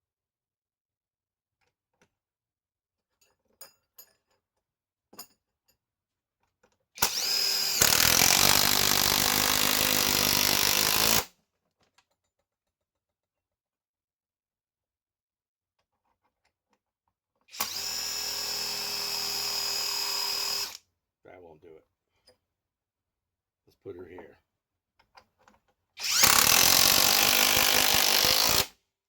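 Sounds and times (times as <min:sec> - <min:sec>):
impact wrench whining and hammering: 0:07.0 - 0:11.3, 0:17.5 - 0:20.8, 0:26.0 - 0:28.8.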